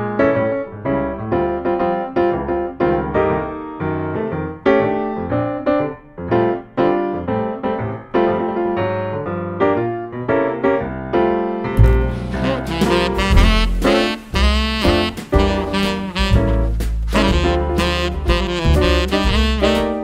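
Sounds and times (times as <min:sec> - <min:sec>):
keyboard melody: 0:11.4 - 0:20.0.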